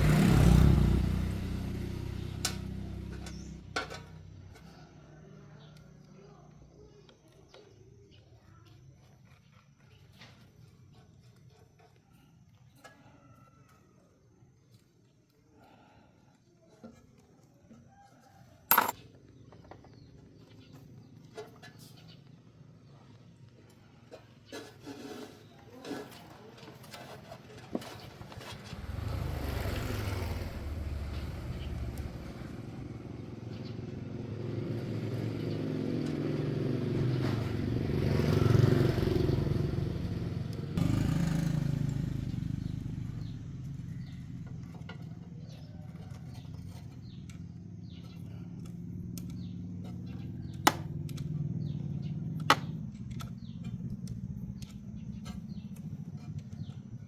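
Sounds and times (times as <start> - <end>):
vehicle engine rumbling: 0.0 - 4.6, 27.8 - 36.0, 36.6 - 57.0.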